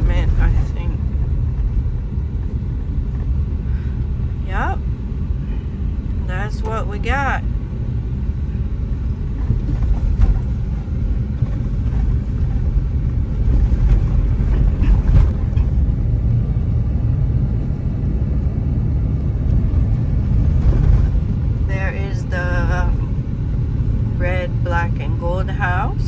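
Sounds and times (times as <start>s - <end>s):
car engine and tyres rumbling: 0.0s - 26.0s.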